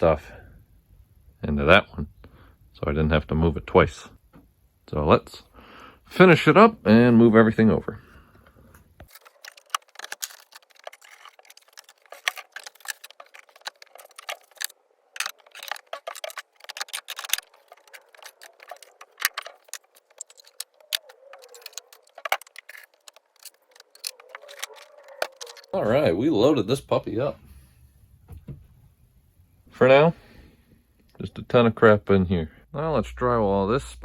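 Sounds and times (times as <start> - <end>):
small tools clattering: 9.0 - 25.8.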